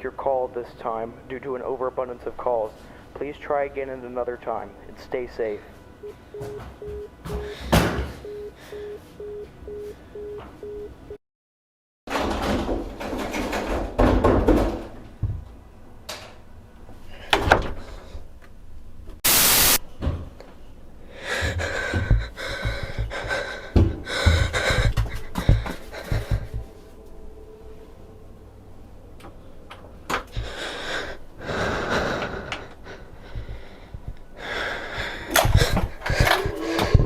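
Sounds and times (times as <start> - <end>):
telephone tone beeping: 6.0 - 11.2
knocks and bangs on a door: 12.1 - 15.4, 23.8 - 26.6
loud burst of hiss: 19.2 - 19.8.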